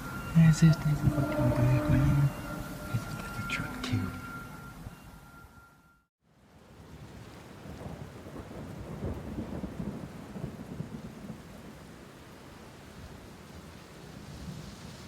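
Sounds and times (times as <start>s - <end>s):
low crackling rumble: 6.3s - 15.0s.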